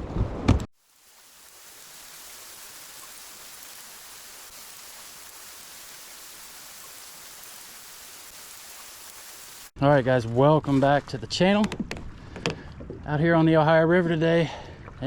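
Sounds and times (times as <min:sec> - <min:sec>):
rushing river water: 0:00.8 - 0:09.7.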